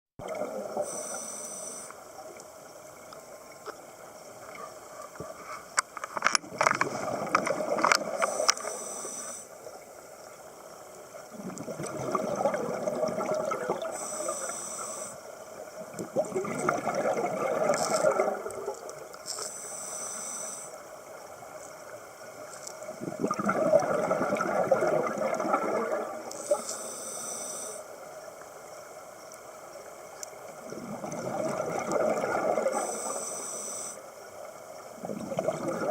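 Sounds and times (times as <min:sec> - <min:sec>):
exhaust bubbling underwater: 0:00.2 - 0:00.8, 0:11.3 - 0:14.0, 0:15.8 - 0:19.0, 0:22.9 - 0:26.6, 0:30.6 - 0:32.8, 0:35.0 - 0:35.9
regulator inhale hiss: 0:00.8 - 0:02.2, 0:08.1 - 0:09.8, 0:13.8 - 0:15.6, 0:19.3 - 0:21.0, 0:26.3 - 0:28.1, 0:32.6 - 0:34.4.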